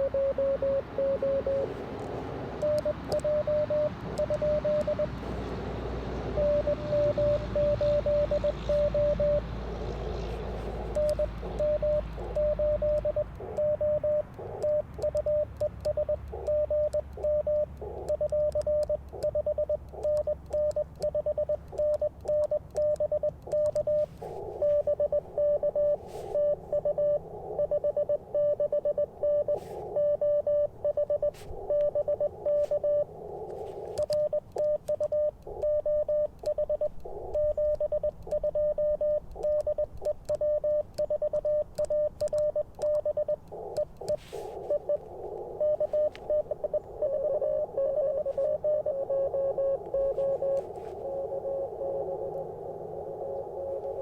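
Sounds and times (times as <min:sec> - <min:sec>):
morse code tone: 0:00.0 - 0:01.8, 0:02.6 - 0:05.2, 0:06.3 - 0:09.6, 0:10.5 - 0:54.0
faint clicks: 0:10.3 - 0:25.2, 0:31.0 - 0:47.1
radio band hiss: 0:29.5 - 0:30.0, 0:31.2 - 0:34.0, 0:43.5 - 0:46.8.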